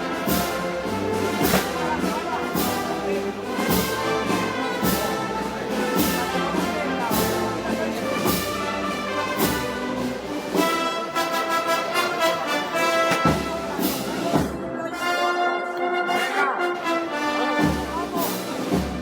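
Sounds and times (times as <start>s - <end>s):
cymbal and drum strokes: 0.0s - 10.9s
brass band playing a march: 0.0s - 19.0s.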